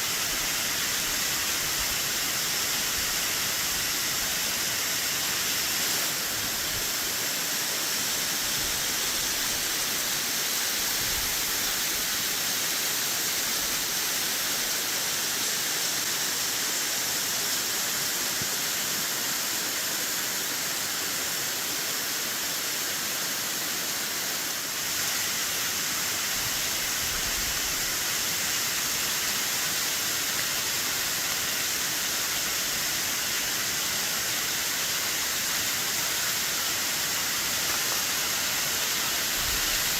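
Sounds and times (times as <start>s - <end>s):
waterfall hiss: 0.0s - 39.9s.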